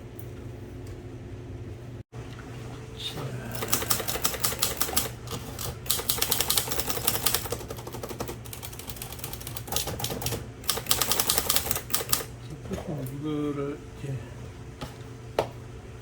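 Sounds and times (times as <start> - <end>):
manual typewriter typing: 3.5 - 12.3.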